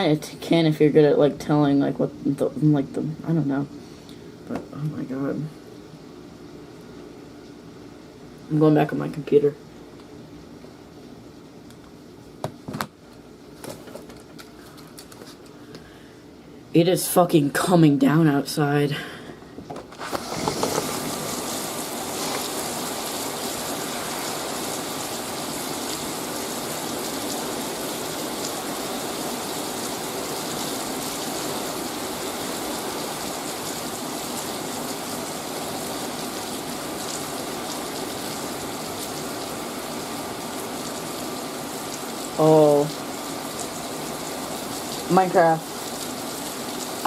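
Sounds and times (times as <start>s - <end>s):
heavy rain pouring: 20.0s - 47.0s.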